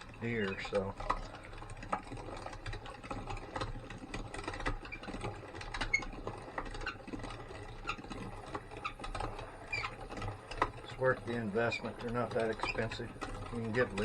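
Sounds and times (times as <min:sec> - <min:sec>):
crackling and clicking of grinder: 0:00.0 - 0:14.0
meat grinder motor humming: 0:00.0 - 0:14.0.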